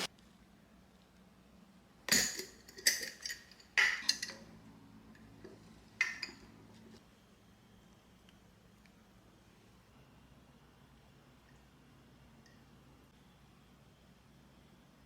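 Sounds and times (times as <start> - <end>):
dishes and utensils clinking: 2.1 - 4.5, 5.5 - 6.6.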